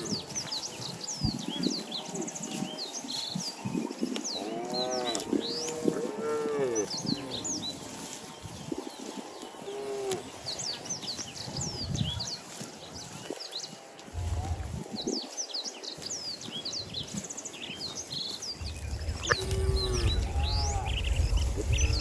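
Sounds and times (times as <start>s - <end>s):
cattle mooing: 4.5s - 6.9s, 18.8s - 22.0s.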